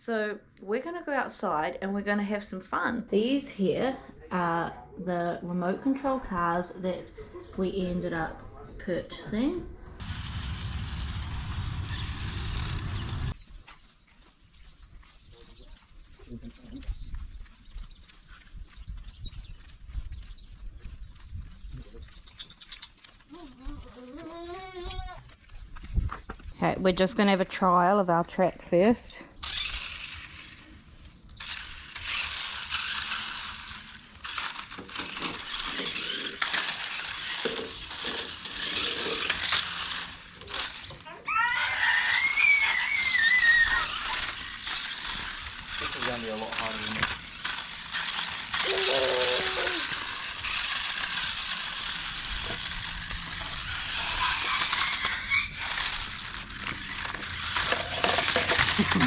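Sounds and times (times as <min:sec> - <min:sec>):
toy car motor whirring: 0:10.0 - 0:13.4, 0:22.1 - 0:25.6, 0:29.4 - 0:59.0.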